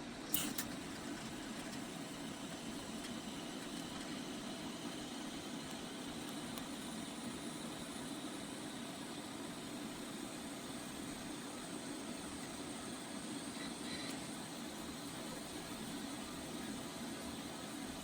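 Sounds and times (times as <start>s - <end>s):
welding arc buzzing hiss: 0.0s - 18.0s
small click: 0.3s - 0.7s.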